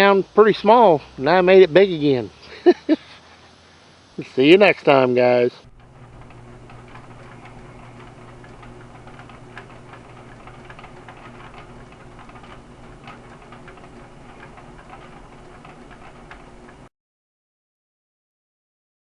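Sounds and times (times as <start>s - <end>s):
steady low hum: 0.0s - 16.9s
fire crackling and popping: 5.7s - 16.9s.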